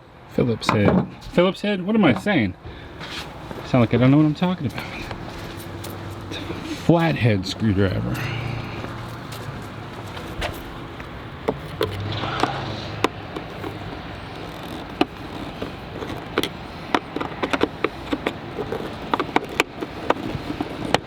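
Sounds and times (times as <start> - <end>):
low background hum: 0.4 - 21.0
screwdriver and plastic clicks: 10.2 - 21.0.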